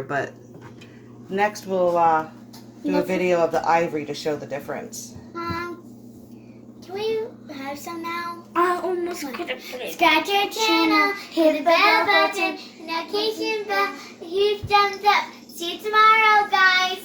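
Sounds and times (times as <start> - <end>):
child singing: 7.0 - 9.1, 9.9 - 17.0.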